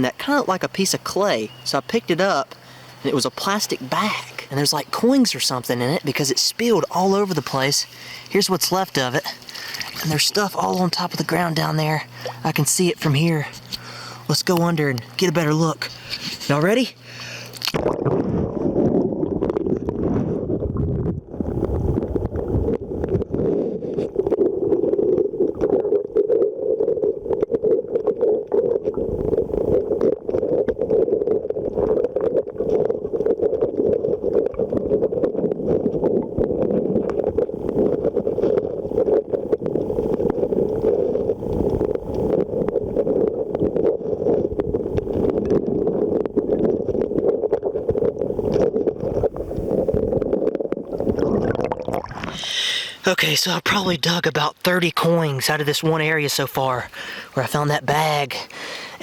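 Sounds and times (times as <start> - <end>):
muffled underwater river rush: 0.0 - 59.0
small crackling clicks: 17.4 - 17.8.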